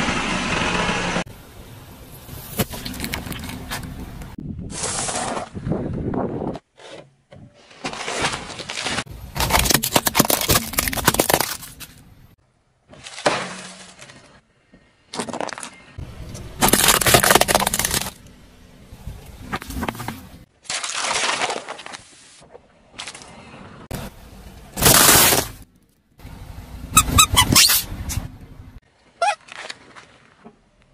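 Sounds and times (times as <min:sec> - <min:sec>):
objects crushed under tyre: 0:07.6 - 0:14.4, 0:15.0 - 0:18.3, 0:19.4 - 0:23.3, 0:24.7 - 0:25.9.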